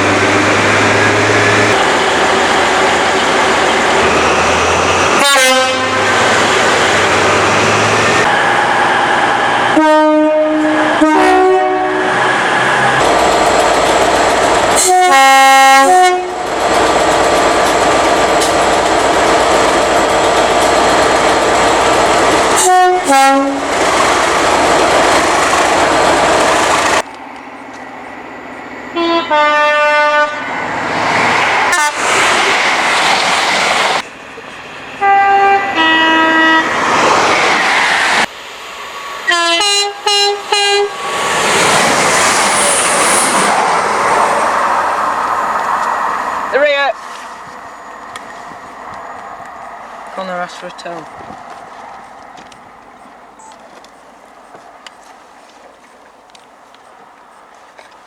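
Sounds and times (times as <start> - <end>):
passing train running noise: 0.0 - 58.0
two-tone train horn blasts: 5.2 - 6.2, 9.7 - 12.2, 14.8 - 16.4, 22.6 - 23.6, 28.9 - 30.5, 31.7 - 32.0, 35.0 - 36.7, 39.3 - 41.0.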